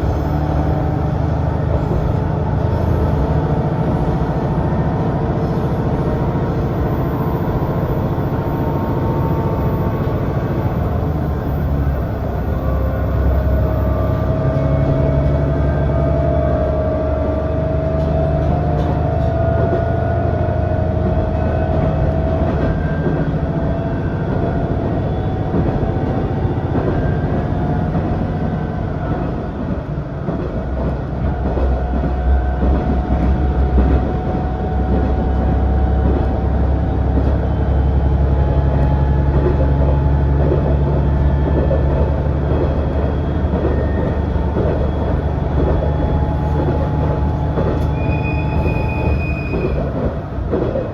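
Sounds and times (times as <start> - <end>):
deep rumble: 0.0 - 50.9
diesel railcar engine drone: 0.0 - 50.9
wheels clicking over rail joints: 38.7 - 50.9.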